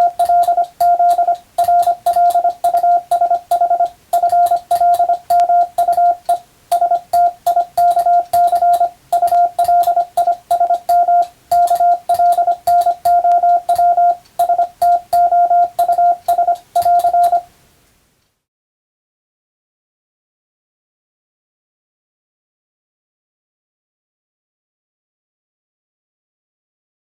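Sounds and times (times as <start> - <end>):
telegraph key clicks: 0.0 - 17.4
morse code beeps: 0.0 - 17.5.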